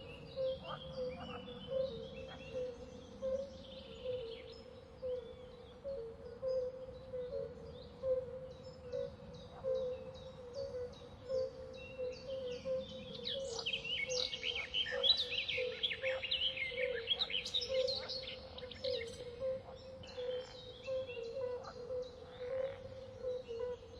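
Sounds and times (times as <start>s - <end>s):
small birds chirping: 8.8s - 23.9s.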